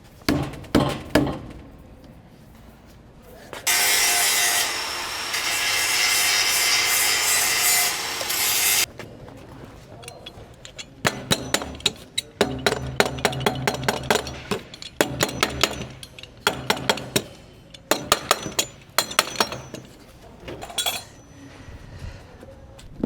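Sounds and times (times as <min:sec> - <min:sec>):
hand tools tapping on pipe fittings: 0:10.0 - 0:21.2.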